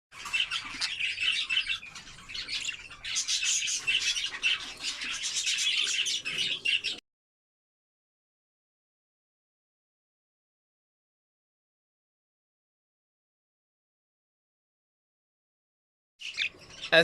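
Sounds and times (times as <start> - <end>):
budgerigars chattering: 0.2 - 7.0, 16.2 - 17.0.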